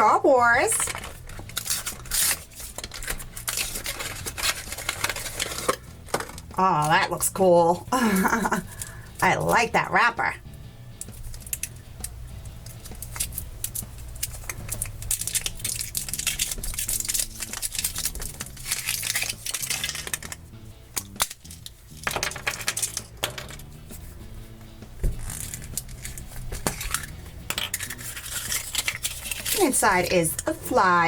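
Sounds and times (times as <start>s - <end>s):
soft background music: 0.0s - 31.0s
foil wrapper crinkling: 0.7s - 6.6s, 12.8s - 22.0s, 25.1s - 30.5s
chocolate egg snapping: 11.0s - 23.3s, 25.1s - 30.5s.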